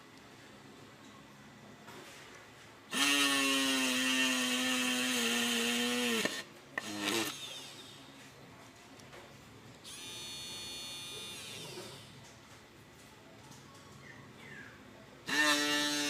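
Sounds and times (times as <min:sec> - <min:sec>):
small electric motor whine: 0:02.9 - 0:07.9, 0:09.9 - 0:12.1, 0:15.3 - 0:16.0.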